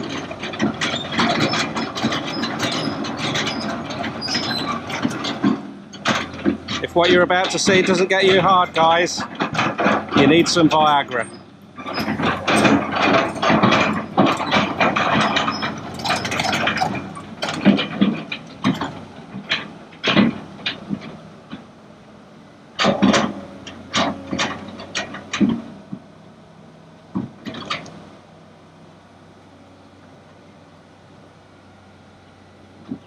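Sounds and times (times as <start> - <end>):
metallic clanks and knocks: 0.0 - 21.7, 22.8 - 26.1, 27.1 - 28.0
excavator diesel engine running: 0.0 - 33.0.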